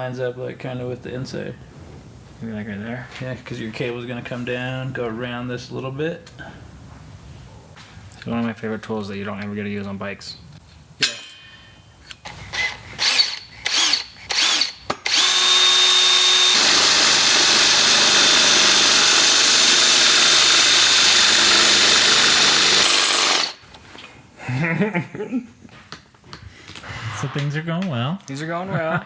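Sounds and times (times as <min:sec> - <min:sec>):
electric drill whining: 0:12.3 - 0:23.6.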